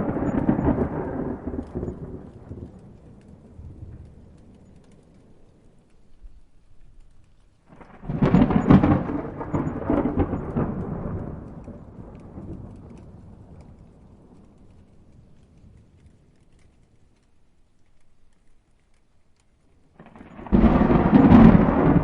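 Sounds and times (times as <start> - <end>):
thunder cracking and rumbling: 0.0 - 7.0, 7.7 - 17.2, 19.9 - 22.0.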